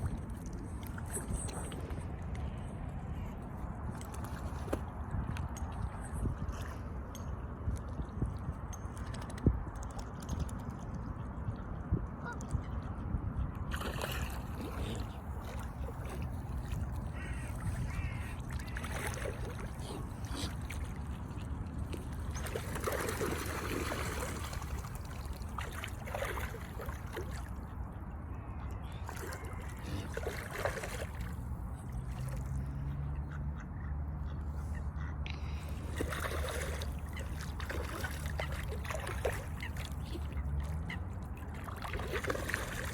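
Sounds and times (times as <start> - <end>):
swan honking: 17.1 - 18.8.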